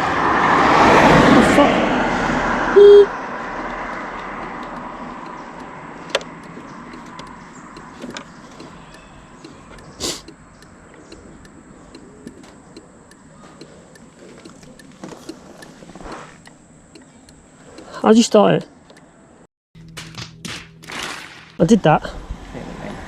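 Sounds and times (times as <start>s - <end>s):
motor vehicle noise: 0.0s - 23.0s
sharp clicks: 3.5s - 18.0s, 18.6s - 19.2s.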